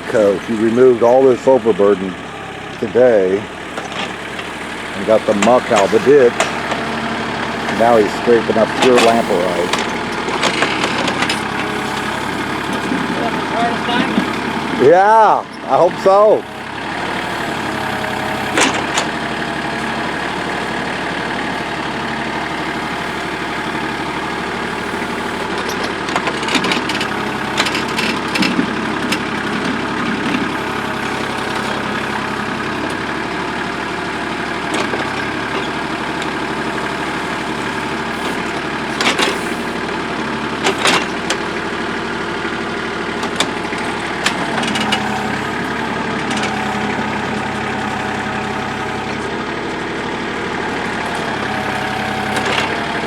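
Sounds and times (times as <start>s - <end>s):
backhoe engine running: 0.0s - 53.0s
bucket scraping and clanking on rock: 3.8s - 14.9s, 34.7s - 41.9s.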